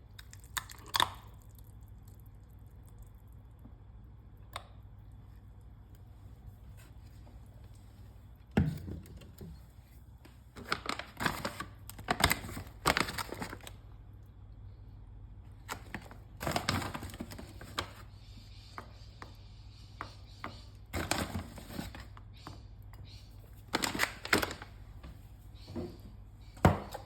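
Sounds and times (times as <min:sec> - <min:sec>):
steady low hum: 0:00.0 - 0:10.6, 0:13.7 - 0:17.4.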